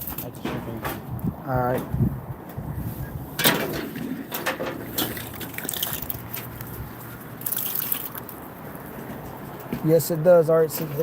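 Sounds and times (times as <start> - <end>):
water splashing and dripping: 4.9 - 6.7.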